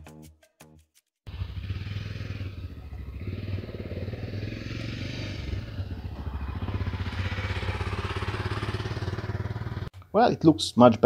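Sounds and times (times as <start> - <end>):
small engine running: 1.3 - 9.9.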